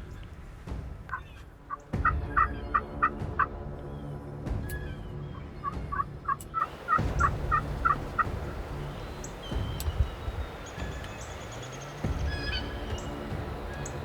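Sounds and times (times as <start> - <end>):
turkey yelping: 6.6 - 14.0.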